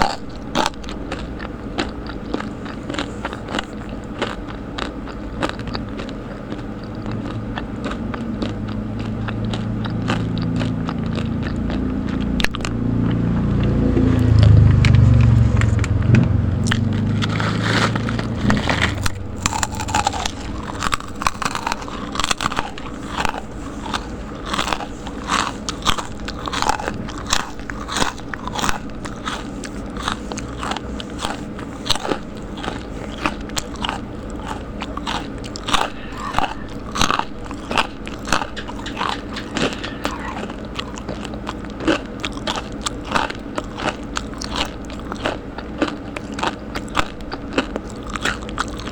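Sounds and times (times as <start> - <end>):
crunching crispy snacks: 0.0 - 16.0, 16.6 - 48.9
low rumble: 7.0 - 29.4, 35.0 - 41.5.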